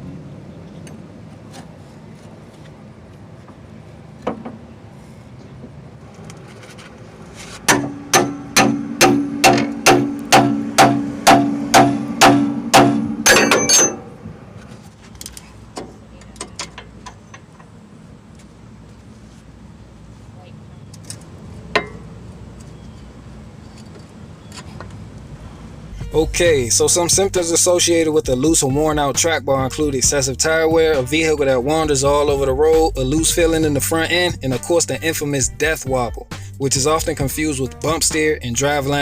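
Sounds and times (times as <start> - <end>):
hammer striking metal: 7.7 - 14.2, 21.8 - 22.1.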